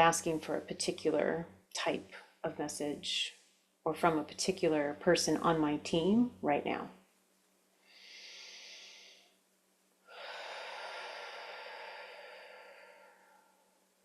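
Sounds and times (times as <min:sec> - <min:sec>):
person breathing deeply: 0:07.8 - 0:09.4, 0:10.0 - 0:13.8.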